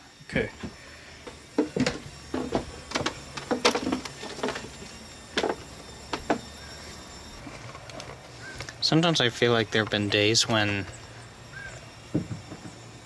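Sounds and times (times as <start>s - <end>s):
irregular knocks and clatters: 1.3s - 6.5s, 12.1s - 12.8s.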